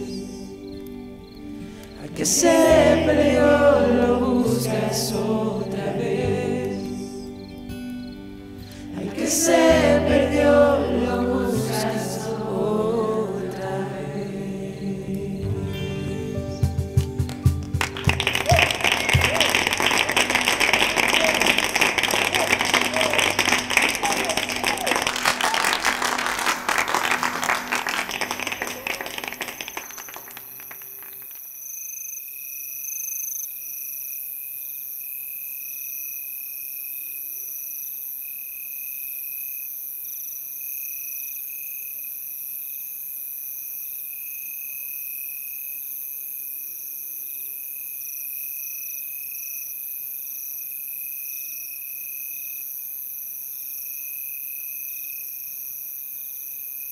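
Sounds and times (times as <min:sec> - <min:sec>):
crickets chirping: 0:00.0 - 0:16.9, 0:18.0 - 0:56.9
crowd applause: 0:17.2 - 0:31.4.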